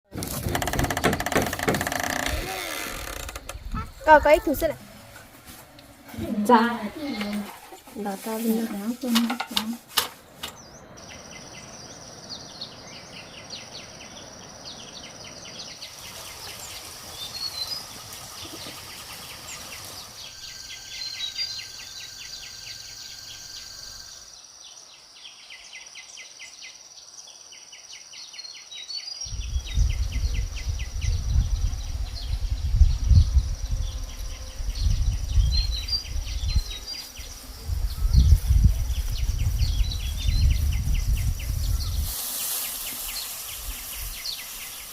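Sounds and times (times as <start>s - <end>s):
birds chirping: 0.2s - 44.9s
insects buzzing and ticking: 0.3s - 4.7s, 10.5s - 28.5s, 32.5s - 44.9s
gusty low rumble: 29.3s - 42.2s.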